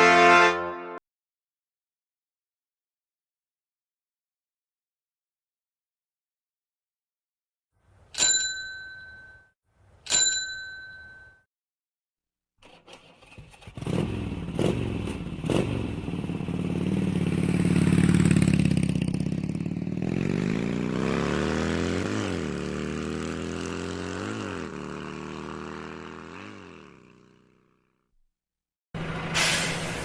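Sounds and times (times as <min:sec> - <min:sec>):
motorcycle engine revving: 0:12.6 - 0:28.1.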